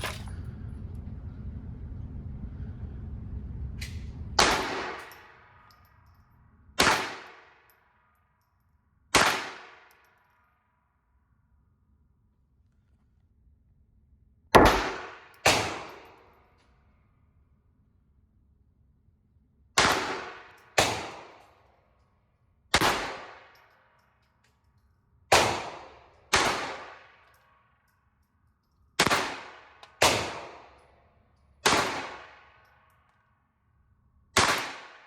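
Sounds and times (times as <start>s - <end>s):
pistol shots with echo: 6.8s - 7.6s, 9.2s - 10.0s, 14.6s - 16.2s, 22.8s - 23.6s, 25.3s - 27.2s, 29.0s - 30.8s, 31.6s - 32.6s, 34.4s - 35.0s.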